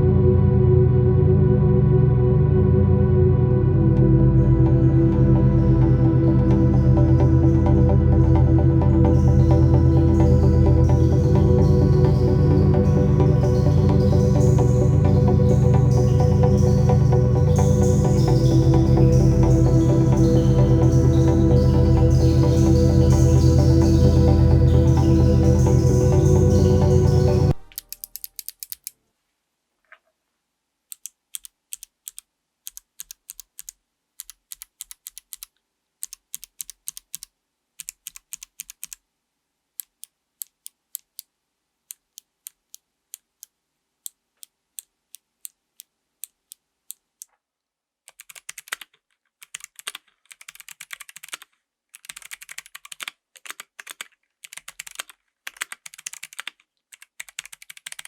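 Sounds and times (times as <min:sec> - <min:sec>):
mechanical keyboard typing: 0:27.6 - 0:28.9, 0:31.0 - 0:39.0, 0:48.1 - 0:58.0.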